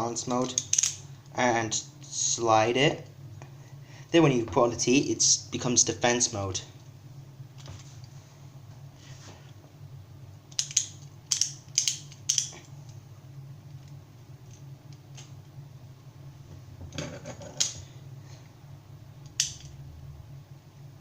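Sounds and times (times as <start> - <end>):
plastic parts clicking: 10.5 - 12.6.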